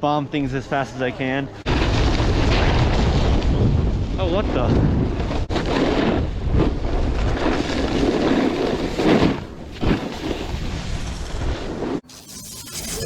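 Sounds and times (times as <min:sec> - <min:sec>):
wind buffeting microphone: 0:02.1 - 0:07.5.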